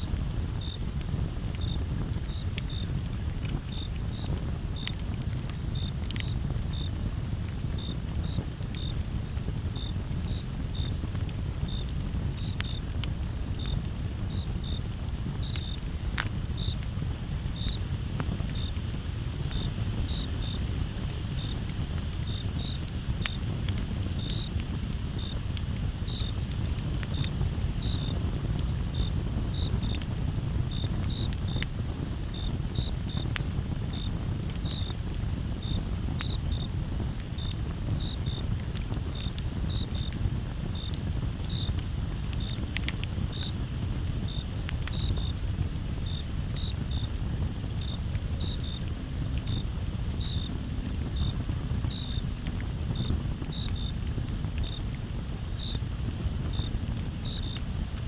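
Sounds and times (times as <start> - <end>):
campfire crackling and popping: 0.0 - 58.0
crickets chirping: 0.1 - 58.0.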